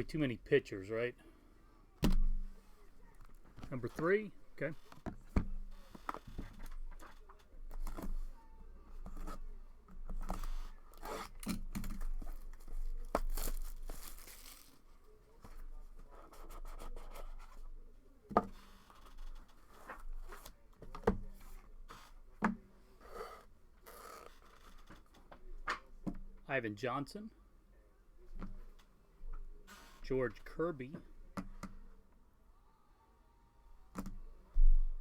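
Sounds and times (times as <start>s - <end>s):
packaging tearing and crinkling: 13.1s - 14.8s.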